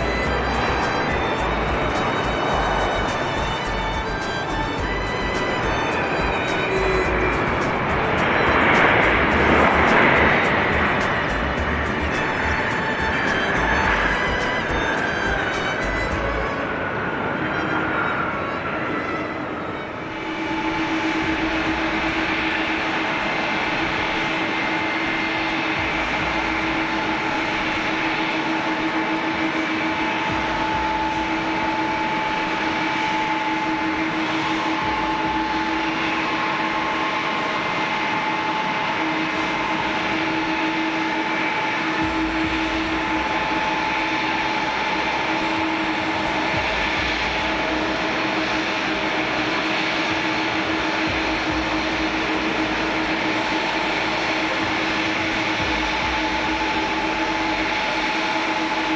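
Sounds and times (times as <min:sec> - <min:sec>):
jet engines running: 0:00.0 - 0:58.9.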